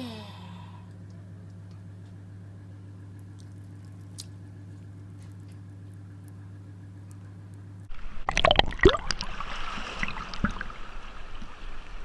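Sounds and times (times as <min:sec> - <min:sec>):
steady low hum: 0:00.0 - 0:12.0
water sloshing and splashing: 0:07.9 - 0:12.0.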